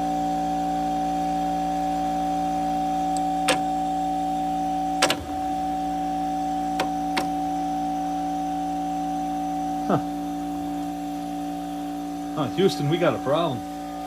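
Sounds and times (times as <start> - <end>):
window air conditioner humming: 0.0 - 14.0
sharp clicks: 6.8 - 7.3.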